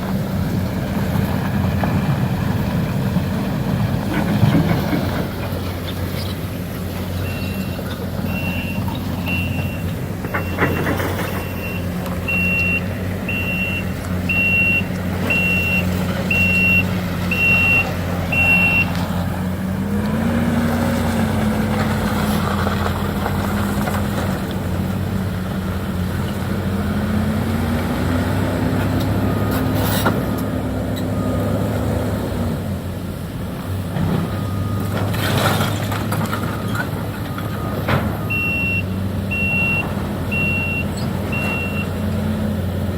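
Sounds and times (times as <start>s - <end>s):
diesel engine revving: 0.0s - 42.9s
backup alarm beeping: 7.2s - 18.9s, 36.5s - 42.0s.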